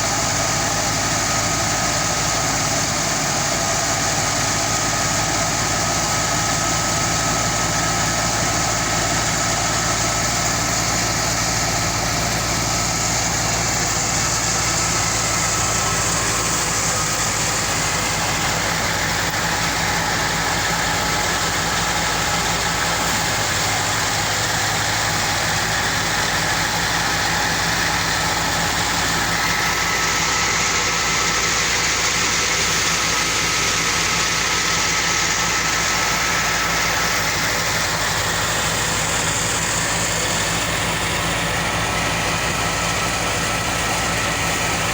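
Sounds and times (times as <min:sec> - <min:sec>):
thresher mechanical drone: 0:00.0 - 0:33.7
low engine hum: 0:00.0 - 0:44.9.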